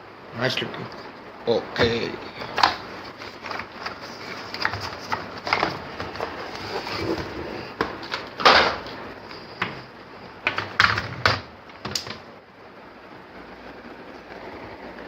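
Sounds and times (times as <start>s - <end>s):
bubble wrap crinkling and rustling: 2.8s - 8.5s.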